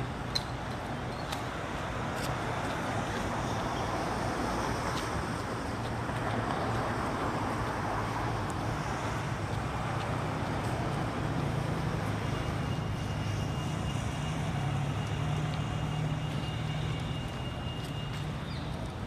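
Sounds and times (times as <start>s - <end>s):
road traffic rumble: 0.0s - 19.0s.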